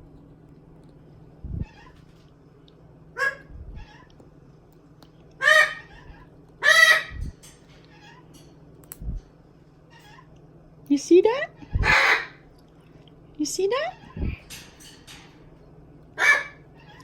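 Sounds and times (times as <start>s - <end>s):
parrot squawking: 3.2s - 4.1s, 5.4s - 7.3s, 11.6s - 12.5s, 16.2s - 17.0s.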